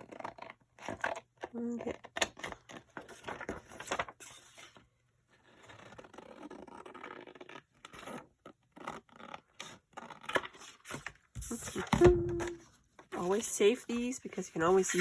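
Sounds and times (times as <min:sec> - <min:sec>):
paper rustling and clicking: 0:00.2 - 0:04.8.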